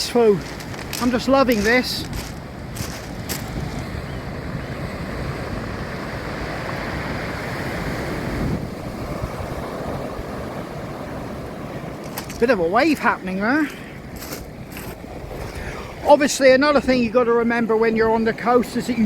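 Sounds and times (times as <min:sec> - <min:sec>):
sea waves breaking on shore: 0:00.0 - 0:19.0.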